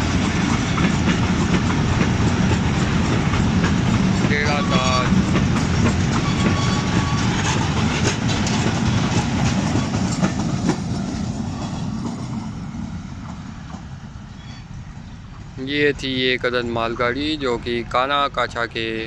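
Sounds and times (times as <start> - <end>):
freight train wheels clacking: 0.0 - 18.4.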